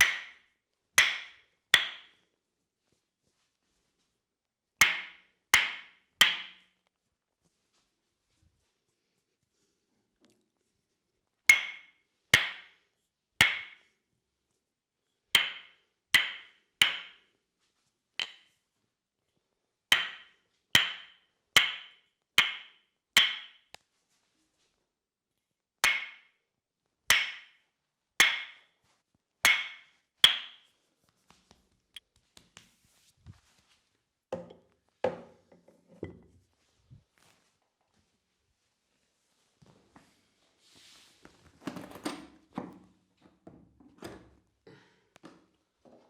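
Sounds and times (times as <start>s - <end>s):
wooden mallet tapping wooden wedge: 0.0s - 0.4s, 1.0s - 2.1s, 4.8s - 6.6s, 11.5s - 12.7s, 13.4s - 13.8s, 15.4s - 17.2s, 18.2s - 18.4s, 19.9s - 23.7s, 25.8s - 26.3s, 27.1s - 27.6s, 28.2s - 28.6s, 29.4s - 30.6s, 34.4s - 35.6s.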